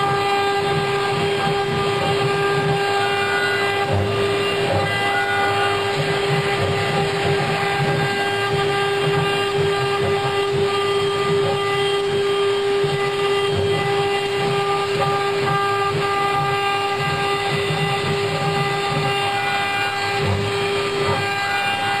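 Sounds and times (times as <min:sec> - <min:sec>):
bit cutting into wood: 0:00.0 - 0:22.0
router spindle high whine: 0:00.0 - 0:22.0.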